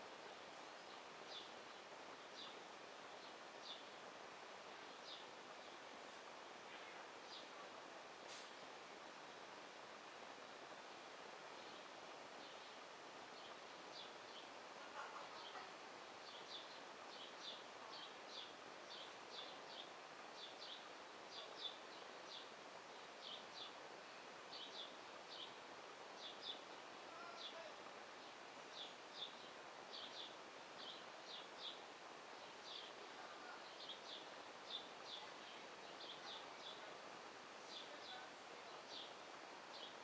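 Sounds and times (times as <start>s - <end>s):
faint outdoor background noise: 0.0s - 40.0s
small bird chirping: 26.2s - 27.8s.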